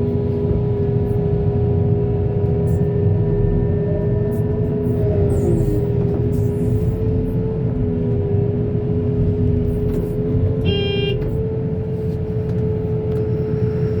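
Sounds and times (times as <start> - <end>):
short horn toot: 10.6 - 11.3.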